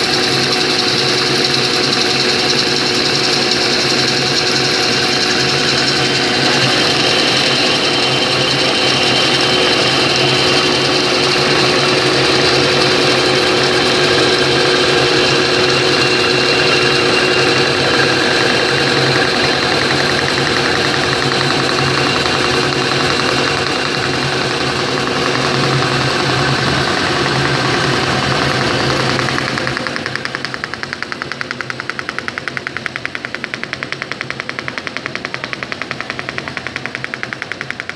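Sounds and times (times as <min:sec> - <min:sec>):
machinery rattling: 0:00.0 - 0:37.9.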